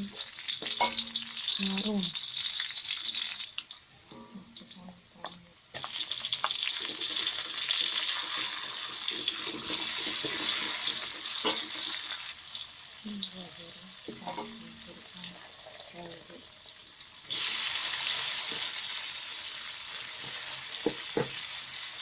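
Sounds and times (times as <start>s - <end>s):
food sizzling in hot oil: 0.0s - 22.0s.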